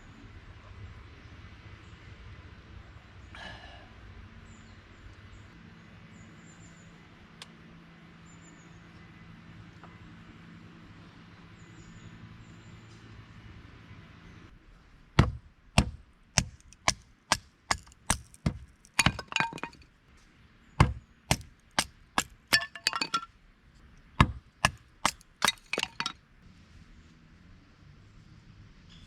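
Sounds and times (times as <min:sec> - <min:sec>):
sharp striking blows: 0:20.8 - 0:23.3.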